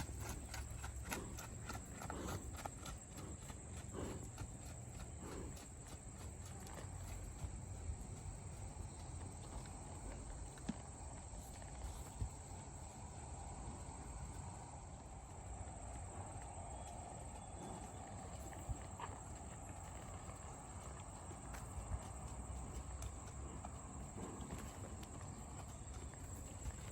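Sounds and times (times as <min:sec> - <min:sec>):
outdoor background noise: 0:00.0 - 0:26.9.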